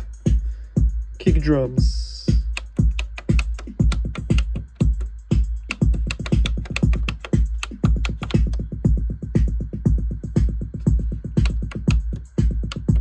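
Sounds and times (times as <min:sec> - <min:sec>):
drum machine pattern: 0:00.0 - 0:13.0
hi-hat hits: 0:00.0 - 0:13.0
kick drum: 0:00.0 - 0:13.0.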